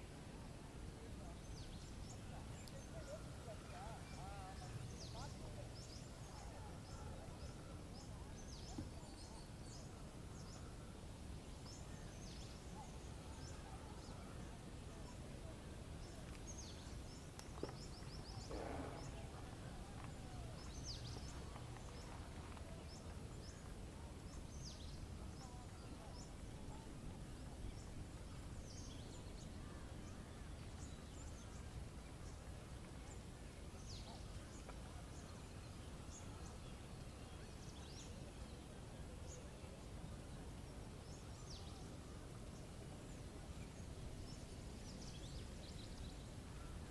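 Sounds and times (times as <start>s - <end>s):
songbirds chirping: 0.0s - 46.9s.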